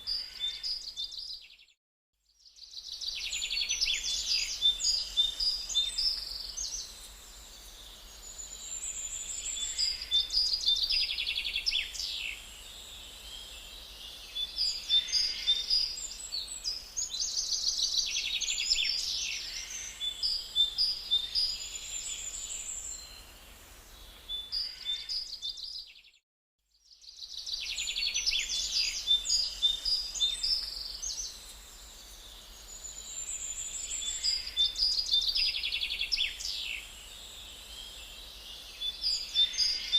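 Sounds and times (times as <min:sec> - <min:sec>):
songbirds chirping and singing: 0:02.5 - 0:23.2, 0:26.9 - 0:39.9.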